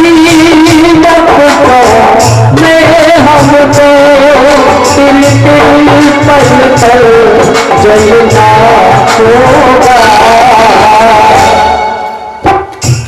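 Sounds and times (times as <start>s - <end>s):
steady drum beat: 0.0s - 13.0s.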